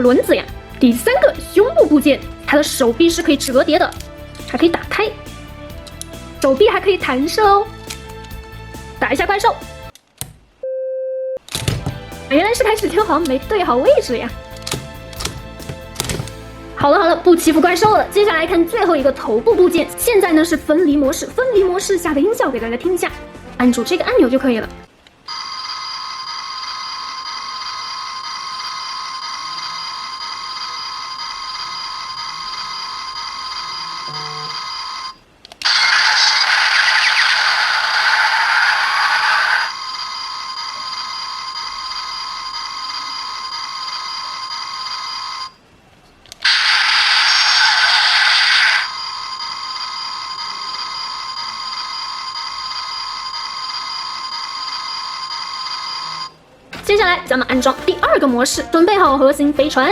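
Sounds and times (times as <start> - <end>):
electronic hum of several tones: 25.3 - 35.2
toy electronic drone: 25.3 - 45.6, 46.4 - 56.4
noisy electronic blast: 46.4 - 50.9.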